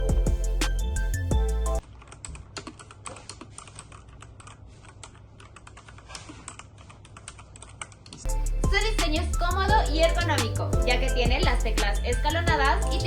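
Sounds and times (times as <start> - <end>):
background music: 0.0 - 1.8, 8.3 - 13.0
typing on mechanical keyboard: 1.8 - 8.3.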